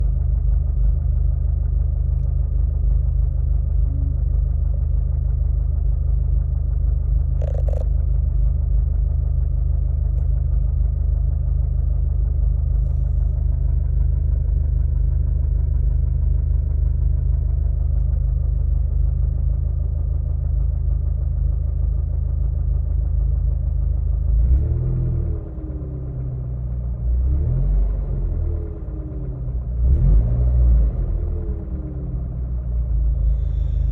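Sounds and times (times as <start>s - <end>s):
car engine idling with knocking: 0.0s - 33.9s
sharp click: 7.4s - 7.9s.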